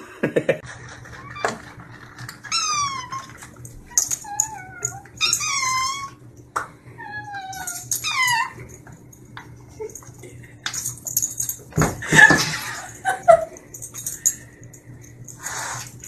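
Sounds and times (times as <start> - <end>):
pet whining cries: 2.4 - 6.3, 6.9 - 8.8.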